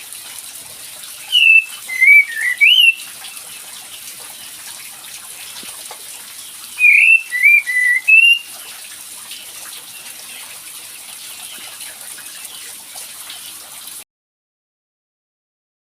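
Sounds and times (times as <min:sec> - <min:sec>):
whistled bird notes: 0:01.3 - 0:03.0, 0:06.8 - 0:08.5.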